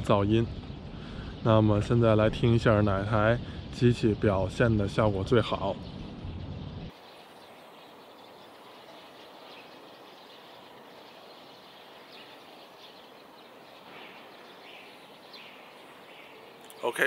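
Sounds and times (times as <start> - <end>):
faint bird chirps: 0.0 - 17.0
steady low hiss: 0.0 - 17.0.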